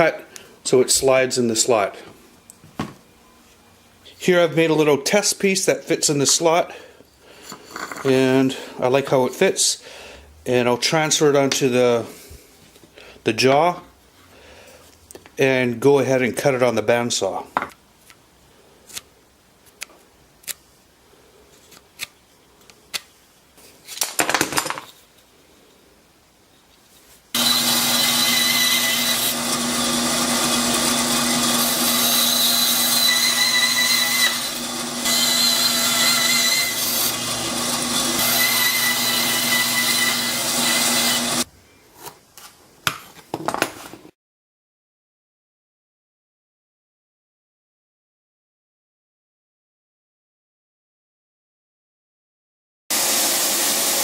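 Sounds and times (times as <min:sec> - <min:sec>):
bandsaw cutting wood: 0:27.4 - 0:41.5, 0:52.9 - 0:54.0.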